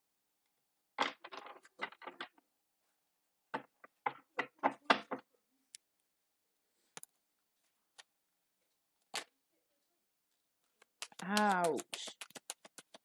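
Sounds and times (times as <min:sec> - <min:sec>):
cards being shuffled: 0:10.6 - 0:13.0
cards knocked on surface: 0:10.9 - 0:13.0.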